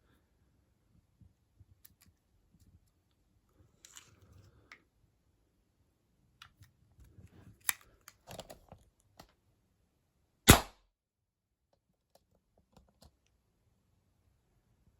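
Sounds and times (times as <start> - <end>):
air pistol firing crack: 10.5 - 10.8.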